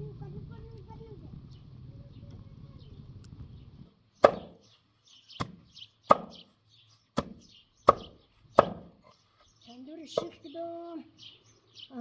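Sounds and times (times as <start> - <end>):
chopping blows on wood: 4.2 - 4.6, 5.4 - 6.5, 7.2 - 9.0.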